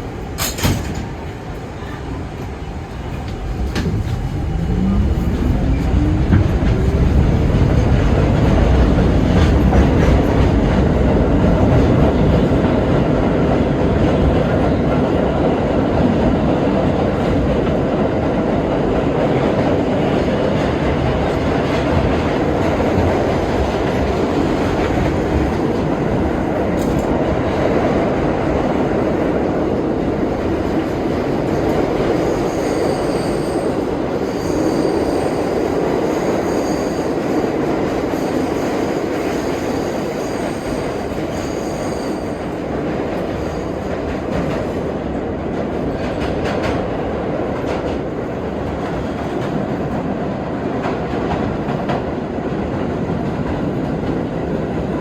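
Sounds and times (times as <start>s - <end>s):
rumble of wheels on rail: 0.0s - 55.0s
high wheel squeal: 32.2s - 37.2s, 40.3s - 42.5s.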